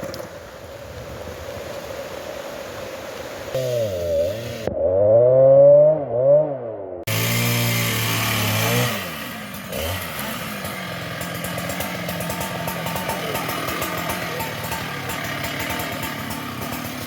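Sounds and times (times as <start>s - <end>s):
chainsaw revving: 3.6s - 17.0s.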